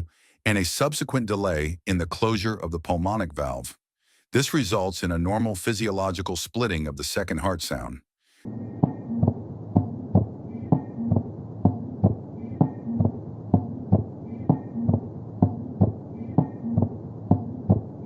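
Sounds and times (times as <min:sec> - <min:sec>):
low hum: 0:08.4 - 0:18.0
heartbeat lub-dub: 0:08.5 - 0:18.0.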